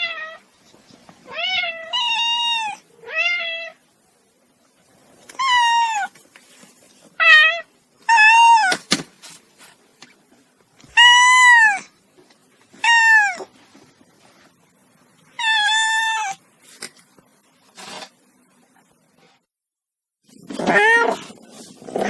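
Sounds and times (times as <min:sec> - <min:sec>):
cat meowing loudly: 0:07.2 - 0:08.8, 0:10.9 - 0:11.9, 0:12.8 - 0:13.5, 0:15.4 - 0:16.4, 0:20.6 - 0:21.3.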